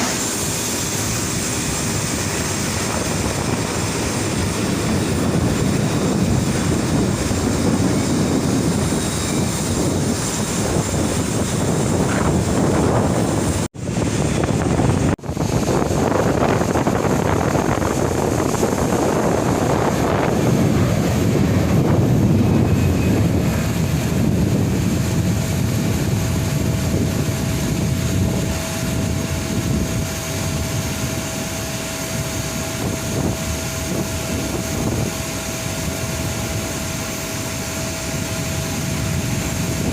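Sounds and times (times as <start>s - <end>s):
airliner engine roar: 0.0s - 39.9s
steady whine: 0.0s - 39.9s.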